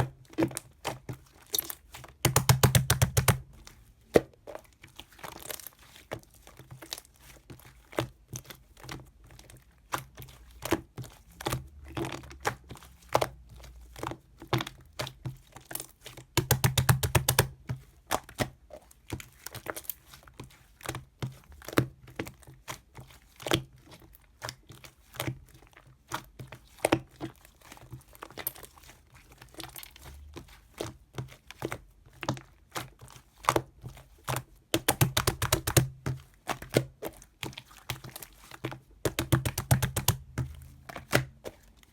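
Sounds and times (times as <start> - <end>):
sharp clicks and taps: 2.2 - 3.4, 16.4 - 17.5, 34.8 - 35.9, 39.1 - 41.3.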